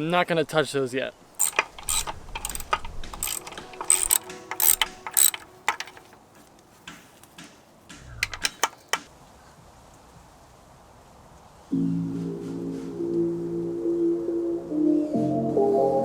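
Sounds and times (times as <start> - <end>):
hand tools clanking on metal: 1.4 - 9.1.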